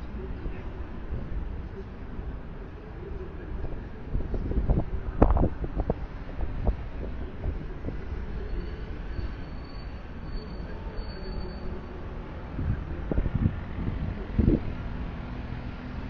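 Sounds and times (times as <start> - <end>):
street traffic rumbling: 0.0 - 16.0
wind gusting on microphone: 3.4 - 9.4, 12.4 - 15.8.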